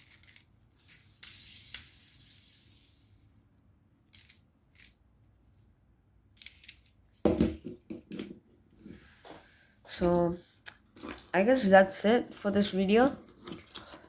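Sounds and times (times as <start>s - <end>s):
knocks and thumps: 7.2s - 8.4s.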